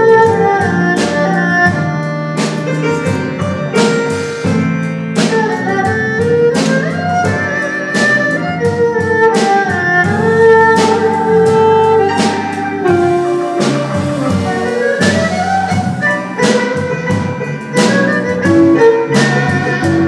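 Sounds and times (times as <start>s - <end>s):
instrumental music with beat: 0.0s - 20.0s.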